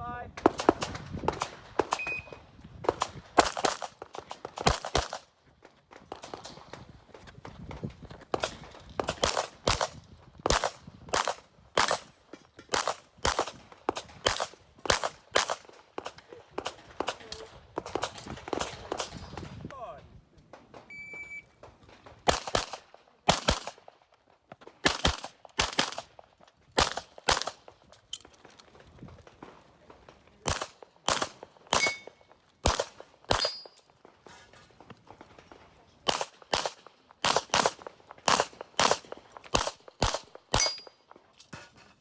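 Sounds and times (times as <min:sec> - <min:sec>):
short high beep: 0:02.0 - 0:02.4, 0:20.9 - 0:21.5.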